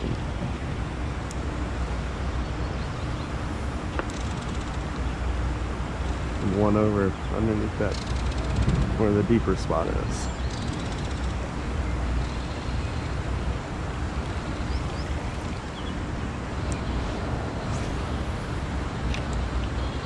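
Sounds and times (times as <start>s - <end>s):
wind buffeting microphone: 0.0s - 20.0s
faint ticks: 3.9s - 5.0s.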